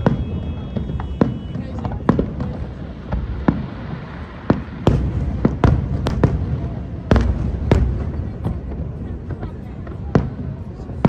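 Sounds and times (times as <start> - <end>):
fireworks bangs: 0.0 - 11.0
low rolling rumble: 2.4 - 10.0.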